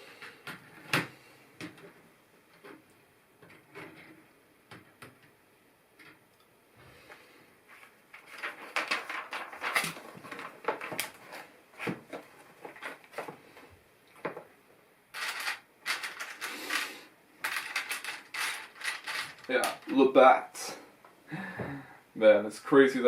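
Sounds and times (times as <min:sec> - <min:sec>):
rustling scrapes: 0:07.0 - 0:13.6, 0:15.1 - 0:19.9
plastic bricks clicking and clattering: 0:15.1 - 0:19.9.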